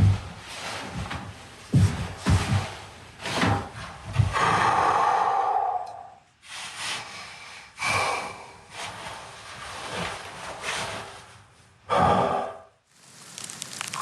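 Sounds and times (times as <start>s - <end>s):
dull thuds: 0.0s - 4.4s
scraping rub: 8.7s - 11.8s.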